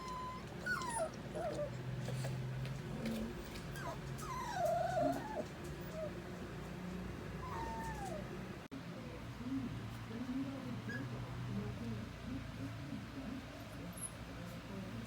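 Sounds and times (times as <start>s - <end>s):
puppies whimpering: 0.0s - 6.2s, 7.4s - 8.3s.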